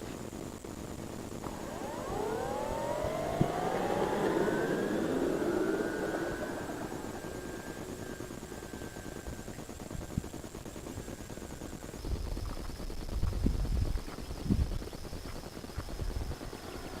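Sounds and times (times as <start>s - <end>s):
model plane motor whining past: 1.3s - 10.3s, 15.8s - 17.0s.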